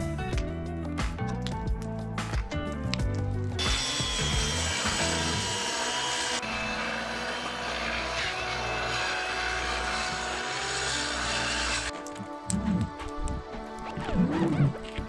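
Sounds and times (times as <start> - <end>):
power saw cutting: 3.6 - 11.9.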